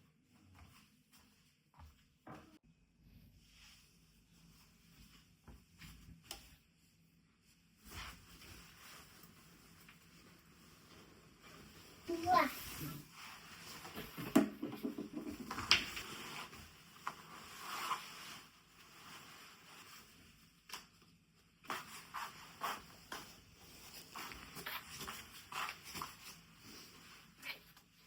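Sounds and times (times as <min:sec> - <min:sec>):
rustles: 0:15.5 - 0:21.0.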